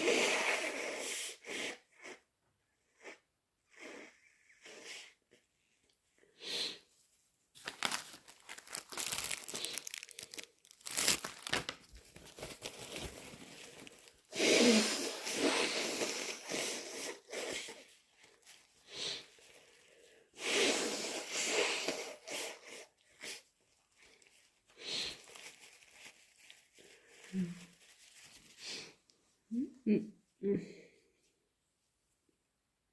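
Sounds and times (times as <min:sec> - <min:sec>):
person blowing nose: 0:00.0 - 0:05.4, 0:06.3 - 0:06.9, 0:14.2 - 0:18.0, 0:18.8 - 0:19.6, 0:20.3 - 0:23.5, 0:24.8 - 0:25.4, 0:28.4 - 0:29.0
tissue crinkling: 0:07.5 - 0:14.3, 0:17.6 - 0:19.9, 0:23.4 - 0:28.9.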